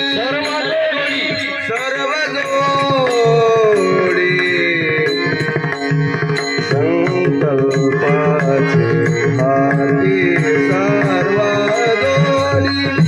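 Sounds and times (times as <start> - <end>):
man singing long notes: 0.0 - 5.4, 6.7 - 13.0
hand drum: 2.6 - 13.0.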